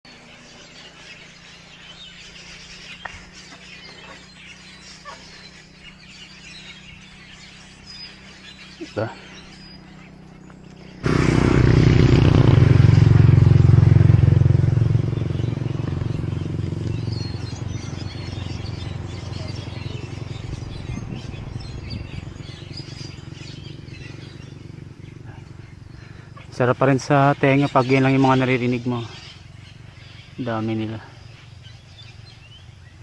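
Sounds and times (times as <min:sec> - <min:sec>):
birds chirping: 0:00.0 - 0:33.0
motorcycle passing by: 0:00.1 - 0:33.0.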